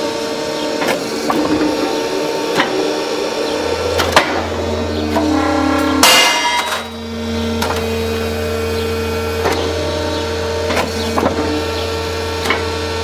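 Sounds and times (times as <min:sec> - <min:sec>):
hydraulic press humming: 0:00.0 - 0:13.0.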